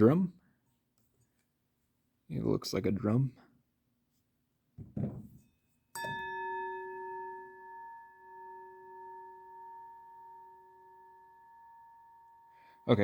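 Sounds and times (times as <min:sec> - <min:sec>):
steel drum struck and ringing: 0:06.0 - 0:12.6.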